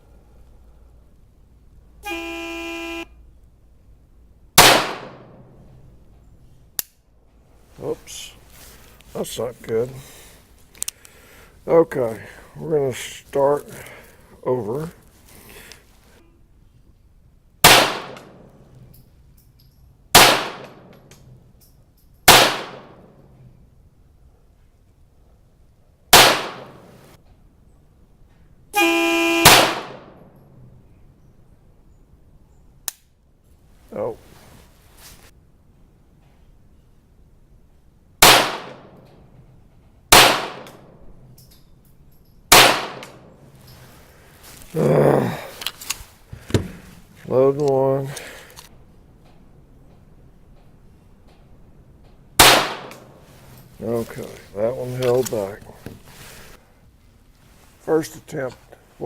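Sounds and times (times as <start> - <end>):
pistol shots: 4.6 - 5.5, 17.6 - 18.5, 20.1 - 20.9, 22.3 - 23.1, 26.1 - 27.0, 29.4 - 30.3, 38.2 - 39.0, 40.1 - 41.0, 42.5 - 43.3, 52.4 - 53.2.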